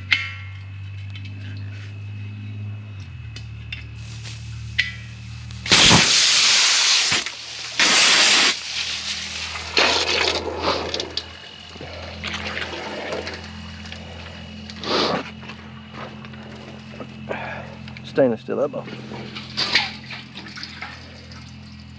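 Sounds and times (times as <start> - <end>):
steady low hum: 0.0 - 21.9
water gushing and splashing: 5.6 - 11.3, 11.9 - 13.6.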